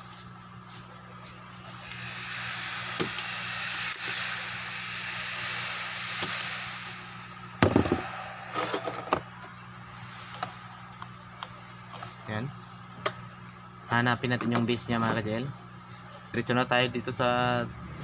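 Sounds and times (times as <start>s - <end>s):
soldering iron sizzling: 1.8s - 9.1s.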